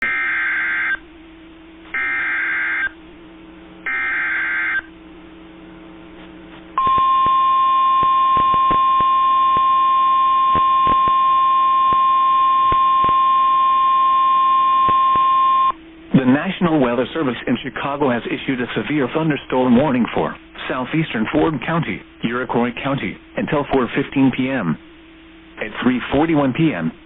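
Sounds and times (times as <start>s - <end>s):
steady warning alarm tone: 0.0s - 1.1s, 1.9s - 3.1s, 3.8s - 5.2s, 6.8s - 15.8s.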